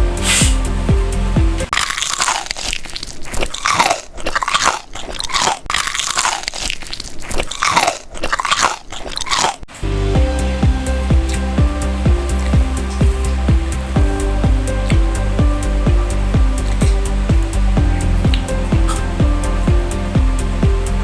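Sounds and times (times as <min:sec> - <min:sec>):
crunching and chewing sandwich: 0:01.7 - 0:09.7.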